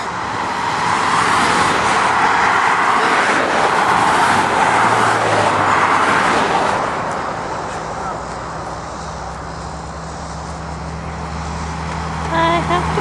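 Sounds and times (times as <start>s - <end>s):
vehicle passing by: 0.0s - 13.0s.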